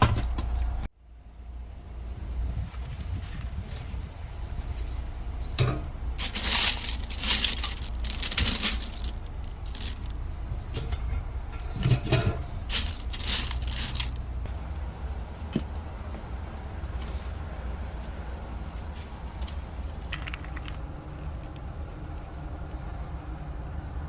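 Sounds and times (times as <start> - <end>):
steady low rumble: 0.0 - 24.0
hard objects clattering: 4.4 - 14.5, 20.0 - 22.0.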